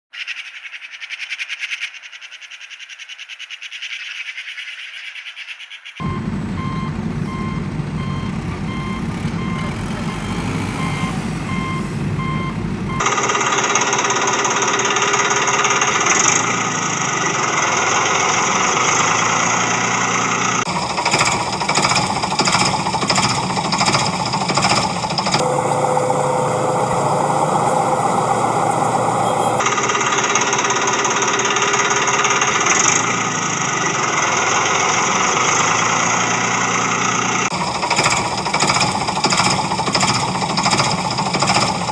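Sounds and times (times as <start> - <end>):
loud machine running: 6.0 - 13.1, 20.7 - 30.6, 37.5 - 41.9
motor noise: 6.0 - 13.1, 20.7 - 29.8
pulsing reversing alarm beep: 6.0 - 13.1, 24.7 - 29.6.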